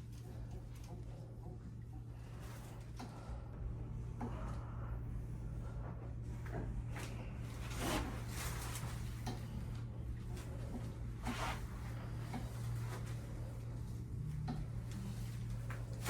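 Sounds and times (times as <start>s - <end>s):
steady low hum: 0.0s - 16.0s
rustling and shuffling: 5.5s - 16.0s.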